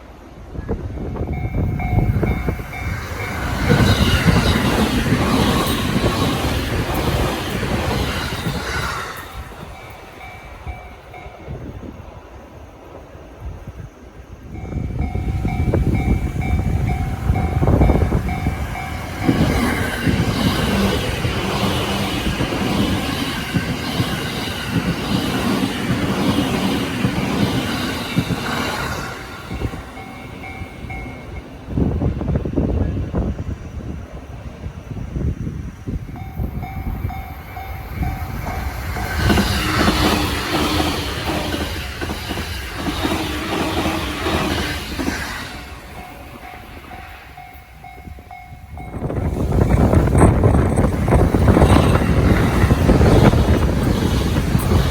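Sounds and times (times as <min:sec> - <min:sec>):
train rushing noise: 0:00.0 - 0:54.9
train wheels rumbling and rattling: 0:00.0 - 0:54.9
two-tone crossing alarm: 0:14.6 - 0:24.9.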